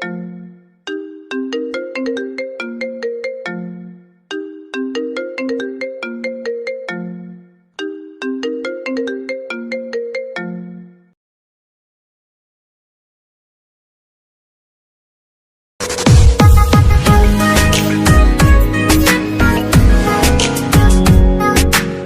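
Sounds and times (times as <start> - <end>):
smartphone ringtone melody: 0.0 - 11.2, 17.1 - 22.0.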